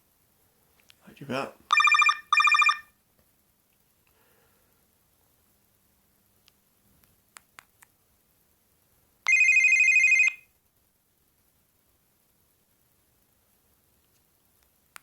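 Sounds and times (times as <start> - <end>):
fast-trilling electronic ringtone: 1.7 - 2.9, 9.3 - 10.4.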